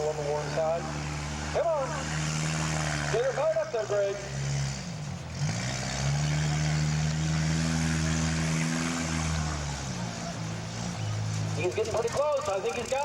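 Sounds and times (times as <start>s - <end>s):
car engine running: 0.0s - 13.0s.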